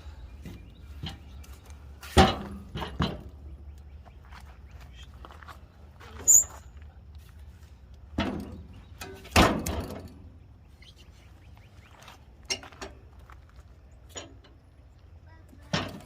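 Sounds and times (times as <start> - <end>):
knocks and thuds of logs: 0.4 - 3.5.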